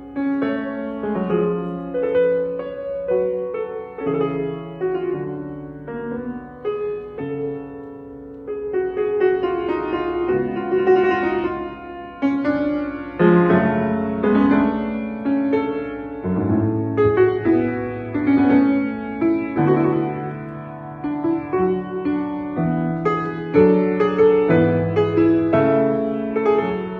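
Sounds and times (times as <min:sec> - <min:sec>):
piano music: 0:00.0 - 0:26.9.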